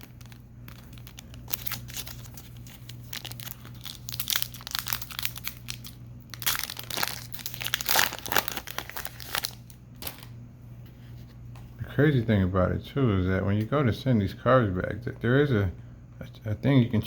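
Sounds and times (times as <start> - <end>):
plastic wrapper crinkling and tearing: 0.0 - 10.3.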